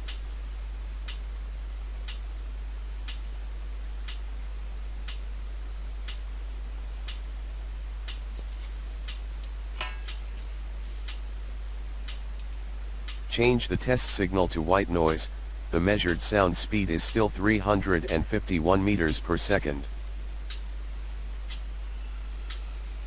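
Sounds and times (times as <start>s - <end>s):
sharp test noise ticks: 0.0s - 0.2s, 1.0s - 1.2s, 2.0s - 2.2s, 3.0s - 3.2s, 4.0s - 4.2s, 5.0s - 5.3s, 6.0s - 6.3s, 7.0s - 7.2s, 8.0s - 10.3s, 12.0s - 14.3s, 15.0s - 15.3s, 16.0s - 20.7s, 21.4s - 21.7s, 22.4s - 22.7s
steady low hum: 0.0s - 23.0s.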